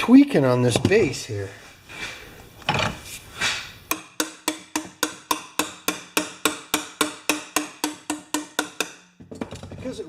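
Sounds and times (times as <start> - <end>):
rapid ringing tapping on metal: 3.9 - 9.0.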